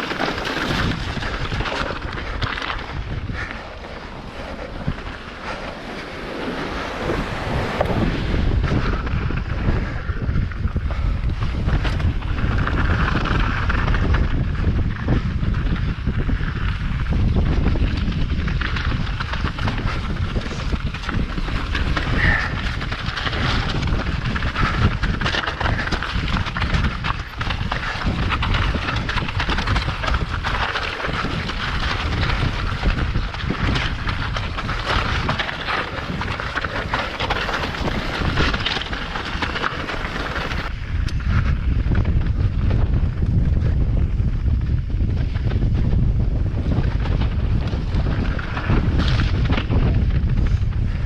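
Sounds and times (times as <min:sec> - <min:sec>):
bike rattling and clicking: 0:00.0 - 0:07.0, 0:07.8 - 0:51.0
tyres crunching on trail: 0:00.0 - 0:08.0, 0:18.0 - 0:40.8
wind buffeting microphone: 0:00.0 - 0:51.0.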